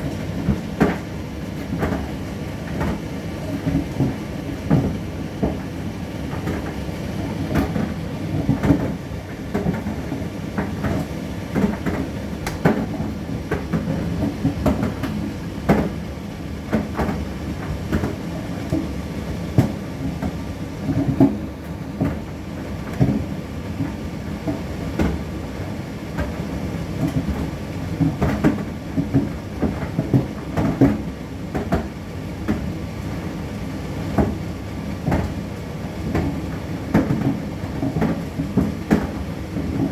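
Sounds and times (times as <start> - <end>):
knocks and clicks in dryer: 0.0 - 39.9.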